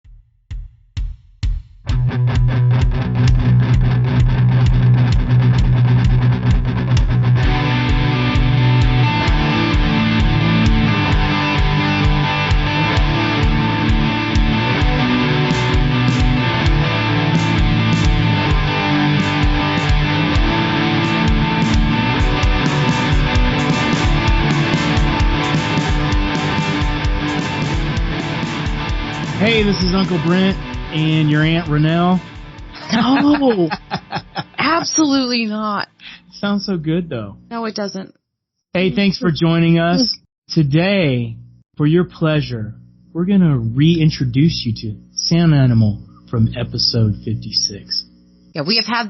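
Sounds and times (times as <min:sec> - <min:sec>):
drum hits: 0:00.0 - 0:11.4, 0:15.8 - 0:34.8
guitar rock music: 0:01.9 - 0:35.3.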